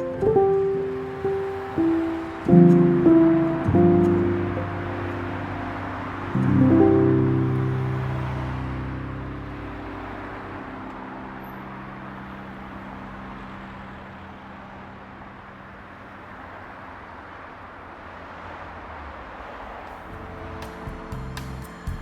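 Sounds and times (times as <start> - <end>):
background music: 0.0 - 12.4, 20.1 - 22.0
car road and engine noise: 0.0 - 22.0.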